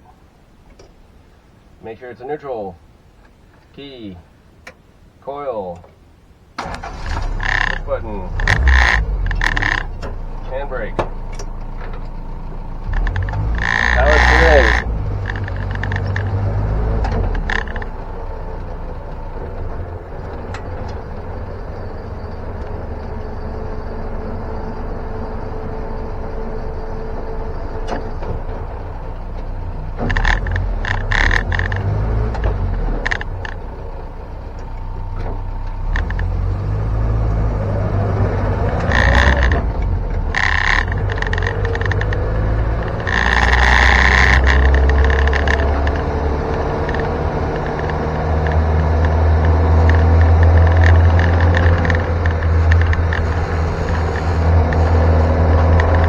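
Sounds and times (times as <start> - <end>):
car engine running: 6.6 - 56.0
rattles and knocks from car body: 12.8 - 18.0, 30.0 - 33.6, 38.7 - 56.0.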